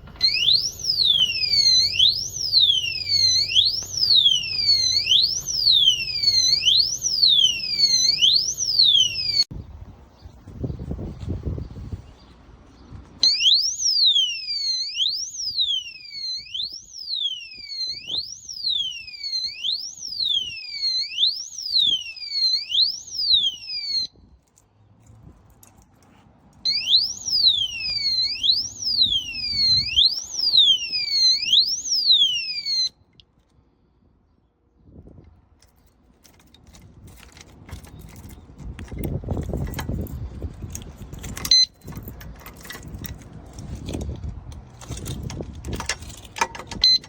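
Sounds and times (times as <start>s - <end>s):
electronic alarm siren: 0.1s - 9.5s, 13.2s - 24.1s, 26.7s - 33.0s, 41.5s - 41.8s.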